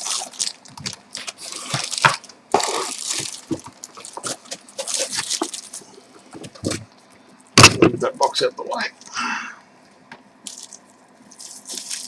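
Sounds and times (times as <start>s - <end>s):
packaging crinkling and rustling: 0.0s - 6.9s, 10.4s - 12.0s.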